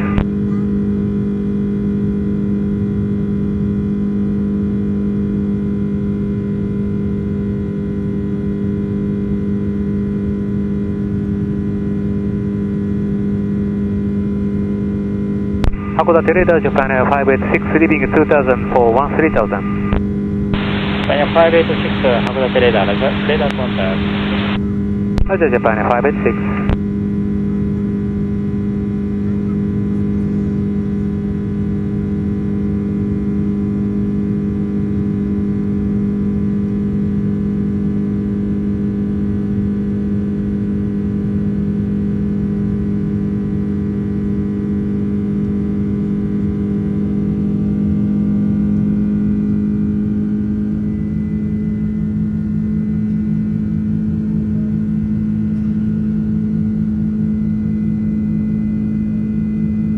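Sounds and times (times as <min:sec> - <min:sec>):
jet engine drone: 0:12.6 - 0:36.2
steady tones: 0:20.6 - 0:24.6.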